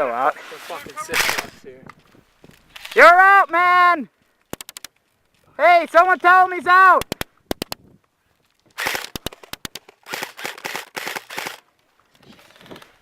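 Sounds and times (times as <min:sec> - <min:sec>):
airsoft guns firing: 0:01.1 - 0:01.6, 0:08.8 - 0:11.6.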